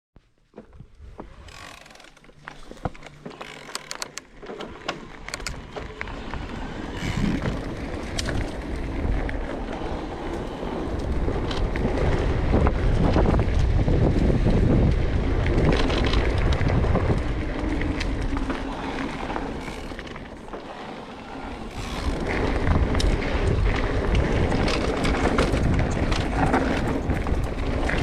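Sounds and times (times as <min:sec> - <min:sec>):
tyre noise: 0:00.4 - 0:28.0
bike frame rattling and clacking: 0:01.4 - 0:06.0, 0:06.7 - 0:08.8, 0:13.0 - 0:28.0
wind noise: 0:05.2 - 0:28.0.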